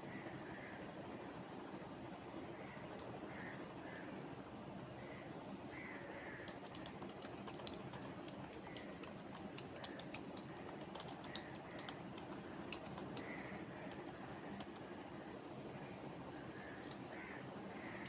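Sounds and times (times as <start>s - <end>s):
steady background hum: 0.0s - 18.0s
keyboard typing: 6.4s - 14.9s.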